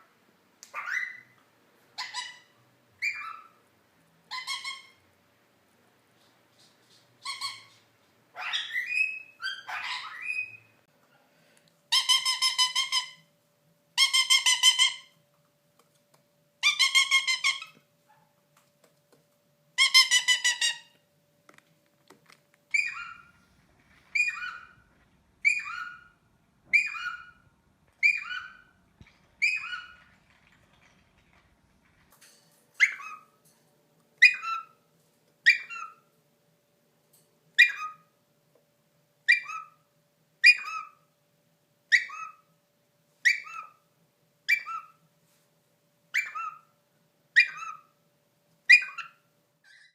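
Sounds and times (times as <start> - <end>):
parakeet calling: 0.7 - 1.4, 2.0 - 3.6, 4.3 - 5.0, 8.4 - 10.8, 14.0 - 15.2, 16.6 - 17.8, 19.8 - 21.0, 22.7 - 23.4, 24.0 - 28.8, 29.4 - 30.8, 32.8 - 33.3, 34.2 - 34.8, 35.4 - 36.0, 37.6 - 38.1, 39.3 - 39.8, 40.4 - 41.0, 41.9 - 42.5, 43.2 - 43.8, 44.5 - 45.0, 46.1 - 46.7, 47.4 - 48.0, 48.7 - 49.9.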